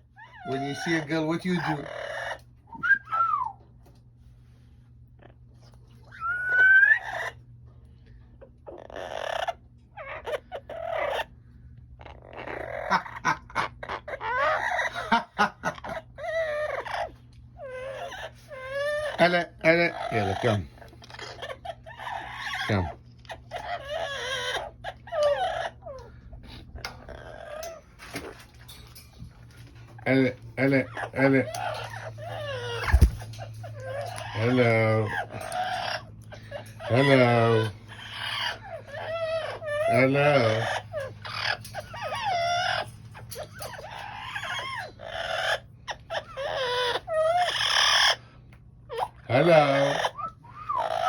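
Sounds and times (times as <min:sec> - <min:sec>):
parrot squawking: 0:00.0 - 0:02.8, 0:06.1 - 0:07.4, 0:08.6 - 0:11.3, 0:12.0 - 0:26.1, 0:29.9 - 0:48.3, 0:48.9 - 0:51.0
parrot squawking and whistling: 0:01.6 - 0:03.6, 0:06.1 - 0:07.4
steady low hum: 0:18.3 - 0:46.3.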